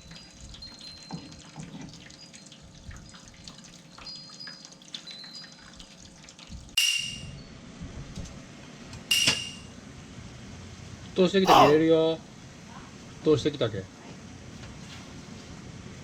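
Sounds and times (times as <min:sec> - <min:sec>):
water boiling in a pot: 0:00.0 - 0:07.3.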